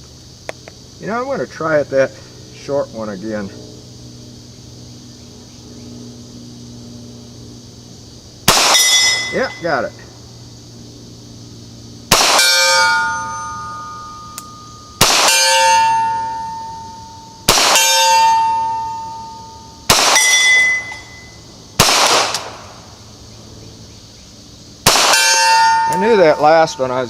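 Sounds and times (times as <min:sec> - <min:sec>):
gunshots: 0:08.5 - 0:09.0, 0:12.1 - 0:12.8, 0:15.0 - 0:15.7, 0:17.5 - 0:18.1, 0:19.9 - 0:20.7, 0:21.8 - 0:22.8, 0:24.8 - 0:25.6
steel target ringing: 0:08.5 - 0:09.8, 0:12.1 - 0:21.4, 0:24.9 - 0:27.0.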